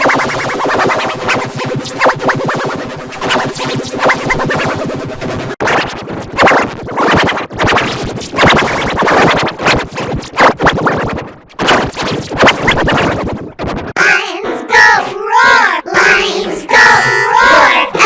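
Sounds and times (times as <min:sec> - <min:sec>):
chopped stuttering electronic music: 0:00.0 - 0:18.0
record scratch effects: 0:00.0 - 0:18.0
wavering pitch-bent tones: 0:14.0 - 0:18.0.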